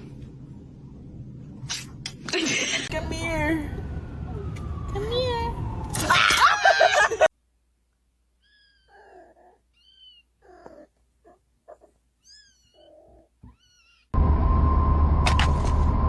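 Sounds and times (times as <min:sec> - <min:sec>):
cat meowing softly: 0:08.4 - 0:10.9, 0:11.8 - 0:14.2.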